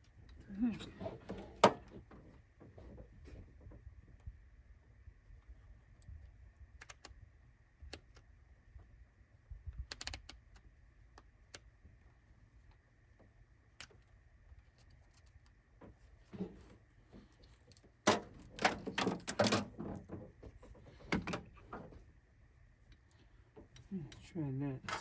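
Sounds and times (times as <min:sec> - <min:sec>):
low steady hum: 0:00.0 - 0:25.0
clicks of wires and connectors: 0:06.8 - 0:07.2, 0:09.8 - 0:11.7.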